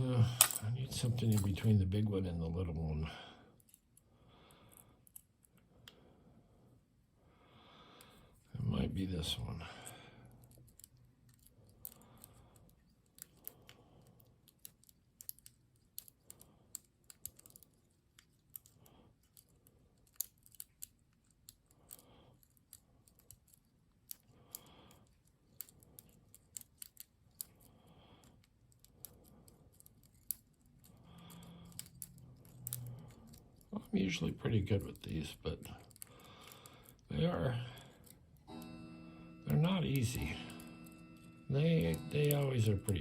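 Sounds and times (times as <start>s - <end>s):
lock pick clicking in padlock: 10.4s - 27.7s, 28.3s - 33.7s.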